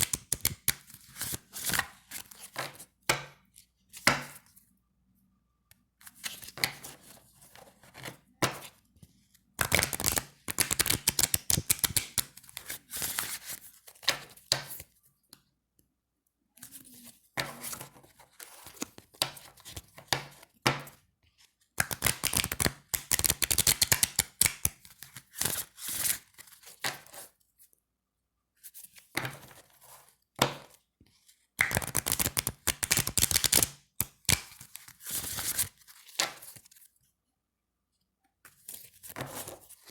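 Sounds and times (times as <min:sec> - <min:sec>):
playing cards being shuffled: 0:09.6 - 0:13.6, 0:21.8 - 0:26.2, 0:31.6 - 0:36.6.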